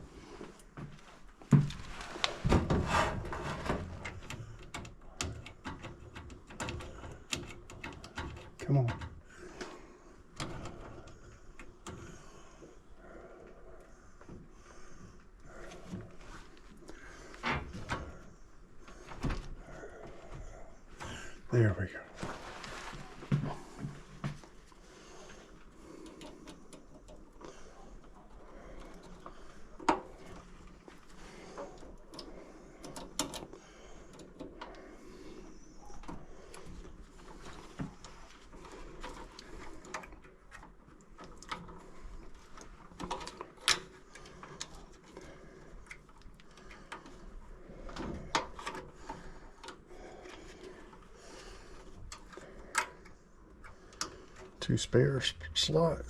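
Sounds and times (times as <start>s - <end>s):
light clicks and knocks of hand work: 0.4s - 21.5s, 22.2s - 54.6s.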